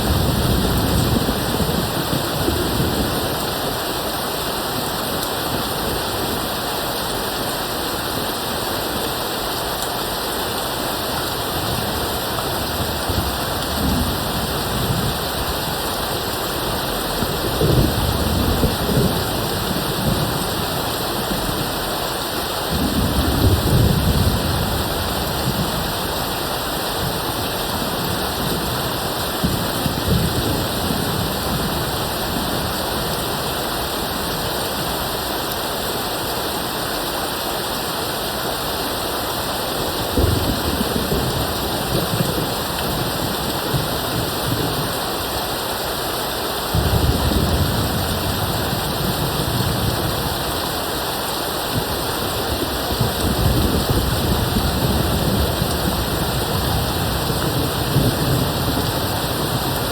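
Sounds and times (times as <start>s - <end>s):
steady rain hissing: 0.0s - 59.9s
distant thunder rolling: 11.7s - 21.8s, 40.0s - 45.0s, 46.7s - 50.5s.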